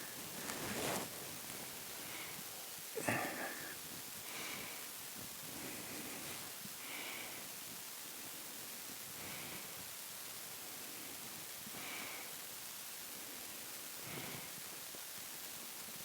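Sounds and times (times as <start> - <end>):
soft breathy sounds: 0.0 - 7.7
steady hiss: 0.0 - 16.0.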